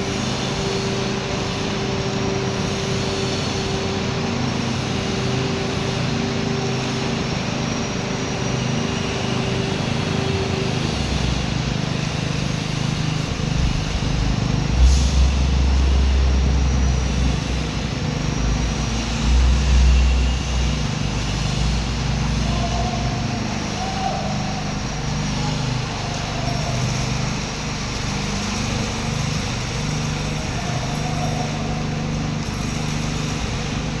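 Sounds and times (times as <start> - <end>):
power trowel engine running: 0.0 - 34.0
deep rumble: 13.3 - 28.0.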